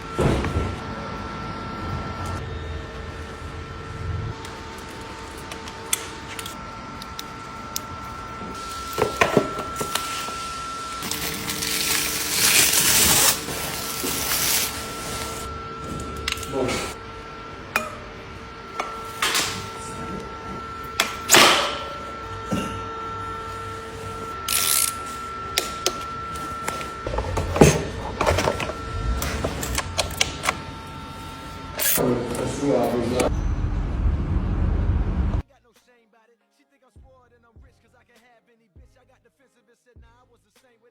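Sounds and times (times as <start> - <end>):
packaging rustling and scraping: 8.6 - 15.5, 26.0 - 30.6.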